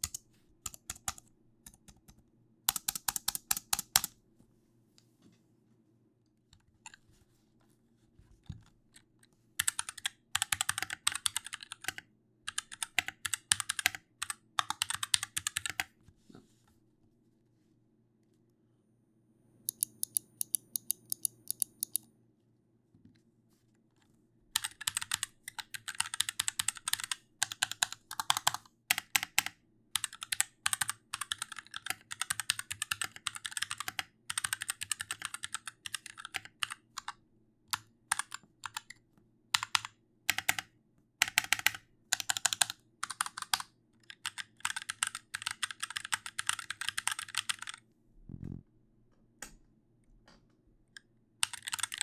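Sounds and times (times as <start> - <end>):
typing on computer keyboard: 0.0 - 4.1, 9.6 - 15.9, 19.7 - 22.0, 24.6 - 39.0, 39.6 - 47.8, 51.4 - 52.0.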